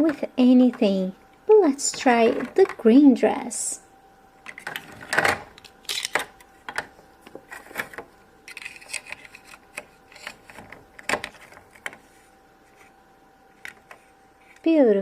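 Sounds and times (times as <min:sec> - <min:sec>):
plastic rubbing: 0:04.4 - 0:14.8.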